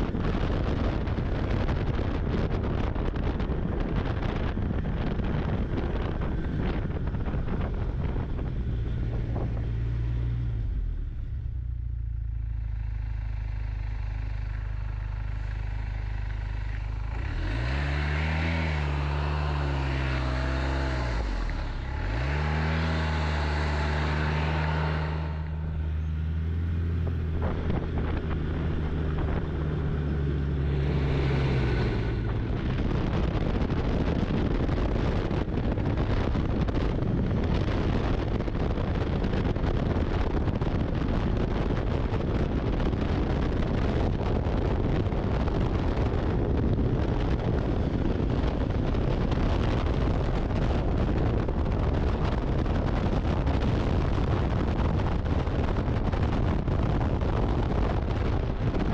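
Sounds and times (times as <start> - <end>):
snowmobile engine revving: 15.8 - 33.4.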